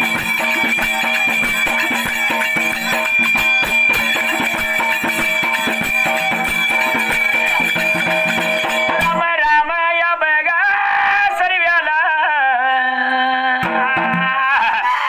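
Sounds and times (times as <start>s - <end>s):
held instrumental tones: 0.0s - 9.2s
fast steady percussion: 0.0s - 9.3s, 13.6s - 15.0s.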